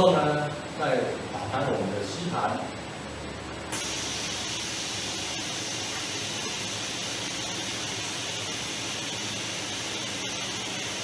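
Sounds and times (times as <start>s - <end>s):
compressed air hissing: 3.7s - 11.0s.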